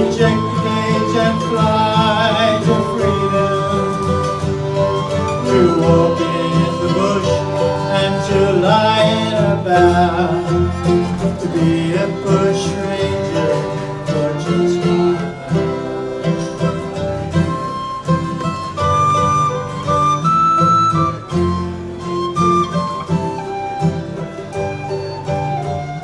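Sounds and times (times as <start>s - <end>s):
banjo strumming: 0.0s - 26.0s
gliding melody line: 0.0s - 26.0s
guitar strumming: 0.0s - 26.0s.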